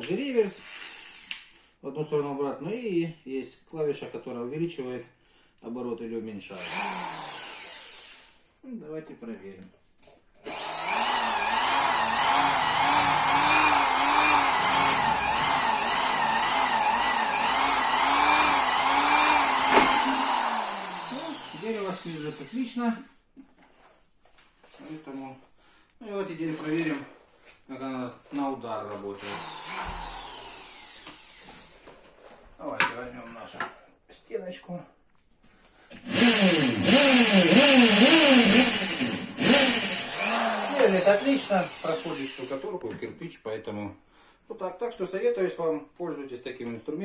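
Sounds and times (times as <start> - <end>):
electric drill drilling into wood: 6.6 - 8.4, 10.4 - 22.8, 29.2 - 31.7, 36.0 - 42.6.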